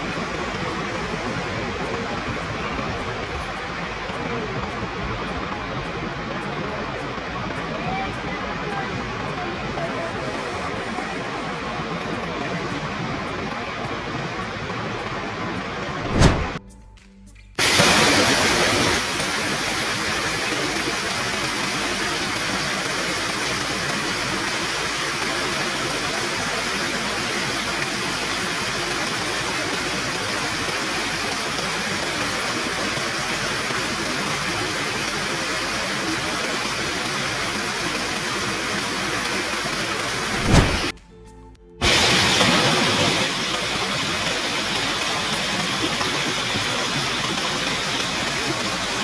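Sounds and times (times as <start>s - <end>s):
waterfall rushing: 0.0s - 16.6s, 17.6s - 40.9s, 41.8s - 49.0s.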